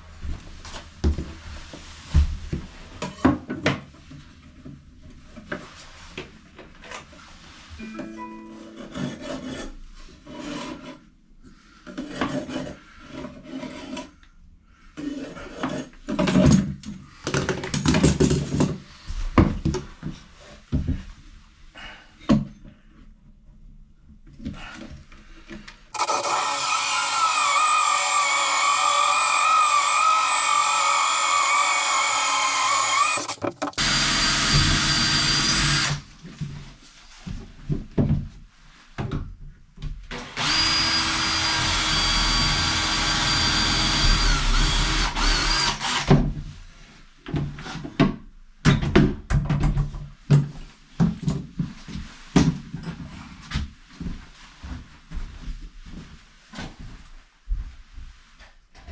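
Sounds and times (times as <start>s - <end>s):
power drill running: 26.0s - 36.0s, 40.3s - 46.1s
knocks and tool clatter: 32.5s - 33.8s.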